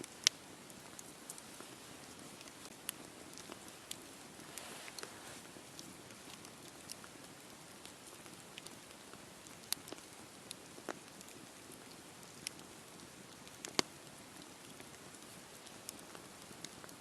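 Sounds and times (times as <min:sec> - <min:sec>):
campfire crackling and popping: 0:00.0 - 0:17.0
campfire hiss: 0:00.0 - 0:17.0.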